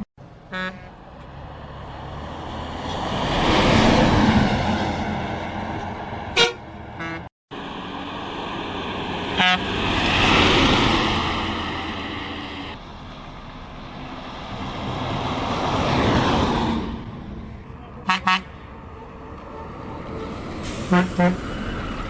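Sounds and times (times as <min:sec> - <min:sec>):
multi-tone horn toots: 0:00.0 - 0:01.0, 0:06.3 - 0:07.3, 0:09.3 - 0:09.8, 0:18.0 - 0:18.6, 0:20.8 - 0:21.4
buses passing on highway: 0:00.0 - 0:22.0.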